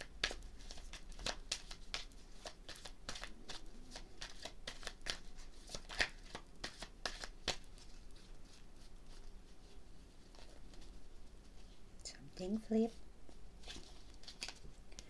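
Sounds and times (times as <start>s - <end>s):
cards being shuffled: 0.0s - 11.7s, 13.3s - 15.0s.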